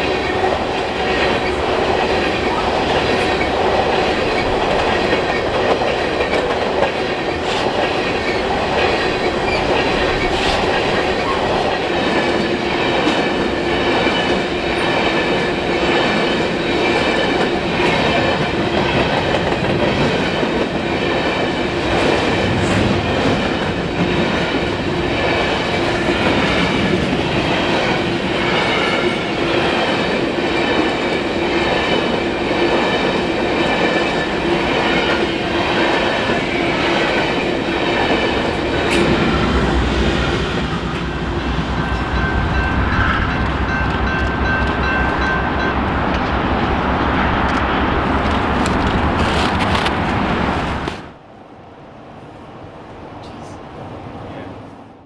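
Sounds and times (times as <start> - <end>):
train wheels rushing on rail: 0.0 - 51.3
wheels clicking over rail joints: 41.8 - 51.0.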